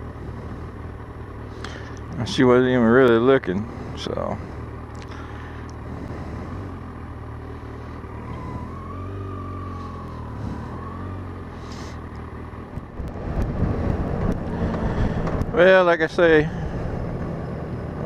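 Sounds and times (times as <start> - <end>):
motorcycle engine running: 0.0 - 18.0
wind rumble: 8.2 - 18.0.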